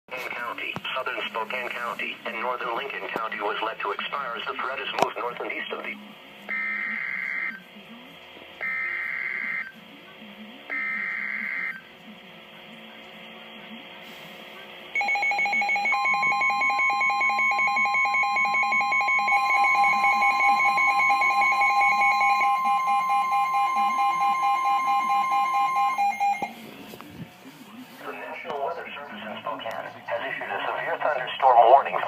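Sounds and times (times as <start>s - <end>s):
harsh two-tone alert alarm: 6.5s - 7.6s, 8.6s - 9.8s, 10.7s - 11.9s, 15.0s - 26.7s.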